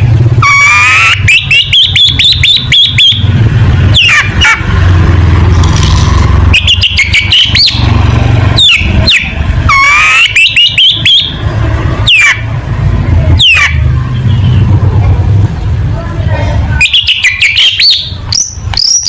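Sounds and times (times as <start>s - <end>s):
bird singing sharp whistles: 16.8s - 19.0s.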